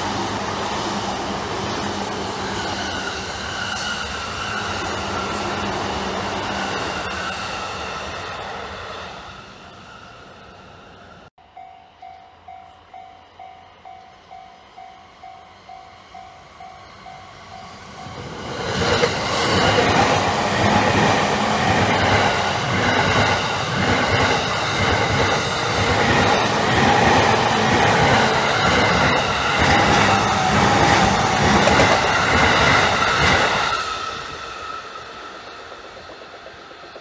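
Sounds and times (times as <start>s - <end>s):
electric train wheels clattering: 13.3s - 37.0s.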